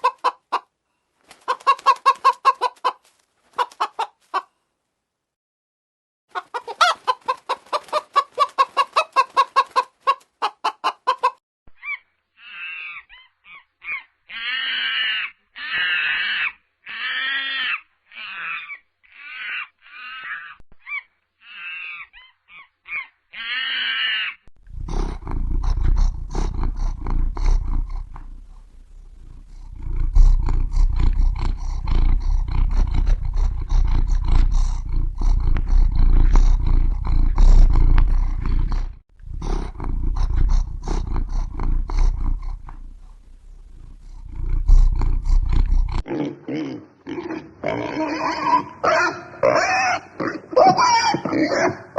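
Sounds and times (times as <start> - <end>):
big cat growling and roaring: 24.6 - 50.5.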